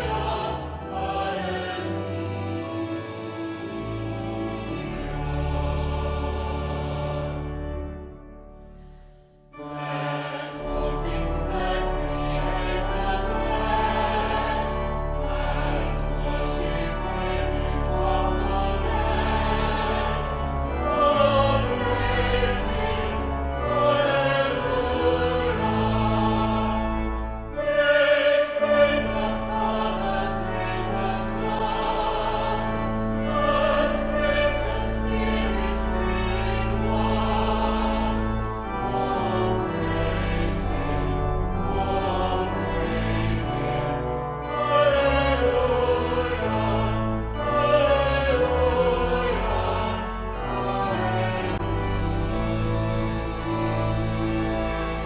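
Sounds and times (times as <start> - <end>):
choir singing with instruments: 0.0 - 55.0.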